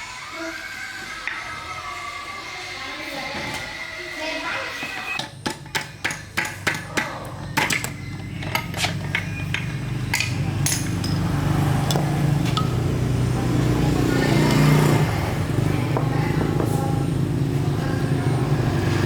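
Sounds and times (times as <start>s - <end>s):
motor low drone: 7.1s - 19.0s.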